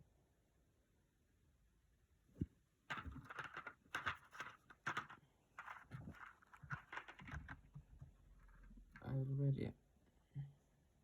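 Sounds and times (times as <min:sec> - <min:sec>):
plastic parts knocking: 0:02.9 - 0:09.0.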